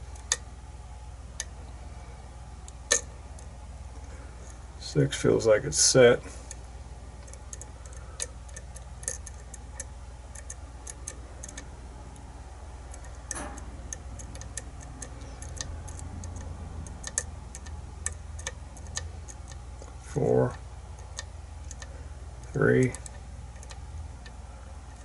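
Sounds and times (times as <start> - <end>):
lock pick metallic clicks: 7.2 - 11.7.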